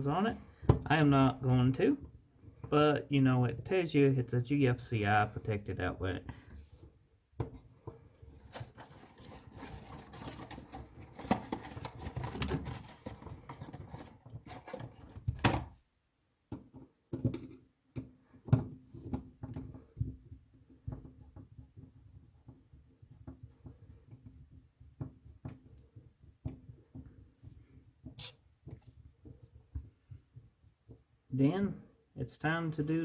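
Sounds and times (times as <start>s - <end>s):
hands rustling and scraping: 6.6s - 15.2s.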